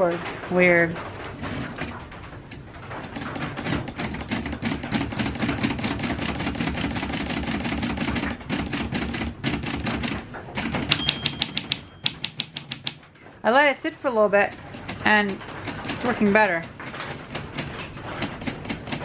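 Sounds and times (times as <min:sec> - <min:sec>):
typewriter key strikes: 0:03.0 - 0:13.0, 0:14.5 - 0:19.0
typewriter bell ring: 0:10.8 - 0:12.8.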